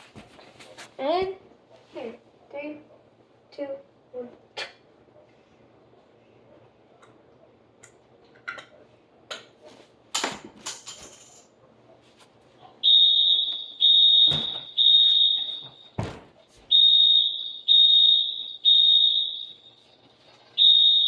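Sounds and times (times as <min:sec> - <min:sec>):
fire alarm beeping: 0:12.8 - 0:21.0.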